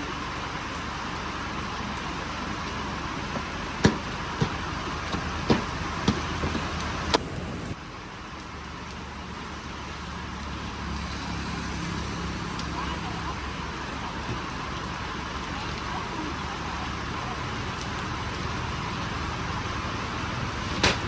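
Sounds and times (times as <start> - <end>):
heavy rain: 0.0 - 21.0
sharp knocks: 3.8 - 7.3.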